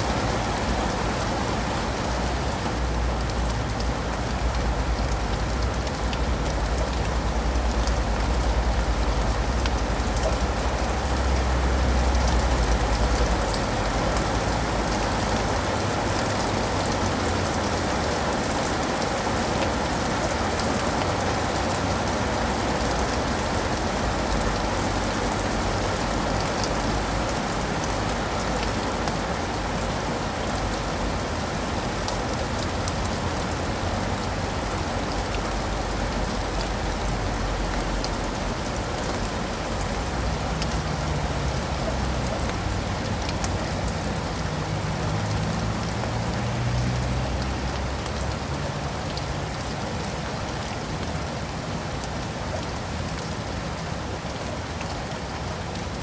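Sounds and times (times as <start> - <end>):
rain pattering on leaves and pavement: 0.0 - 56.0.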